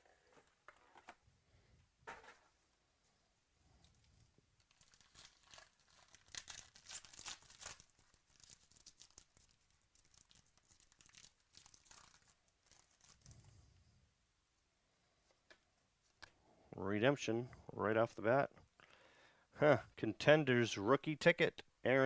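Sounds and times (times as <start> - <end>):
card pack wrapper tearing: 4.6 - 13.4.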